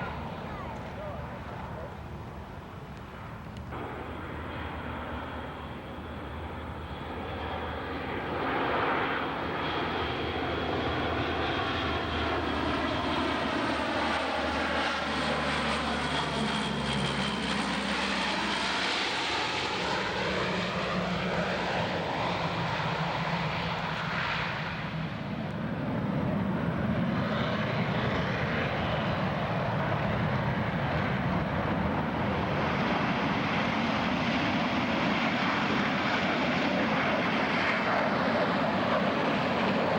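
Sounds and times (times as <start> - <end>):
aircraft flying past: 0.0 - 39.9.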